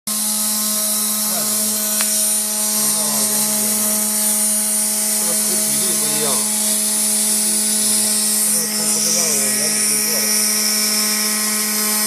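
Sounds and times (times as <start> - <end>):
machine hum with high whine: 0.1 - 12.0.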